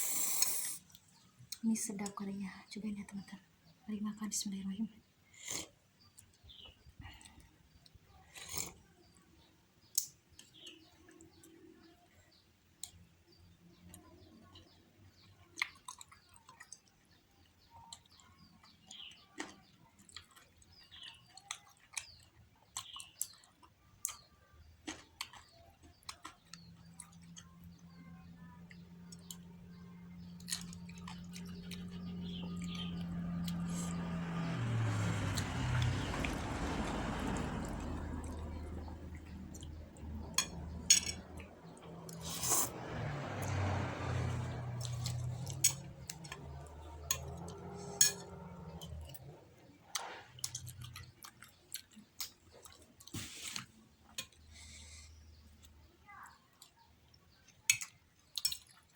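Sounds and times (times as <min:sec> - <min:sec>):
chewing and mouth clicks: 0:15.2 - 0:27.8, 0:30.3 - 0:34.5, 0:43.4 - 0:58.9
low engine hum: 0:26.5 - 0:51.2.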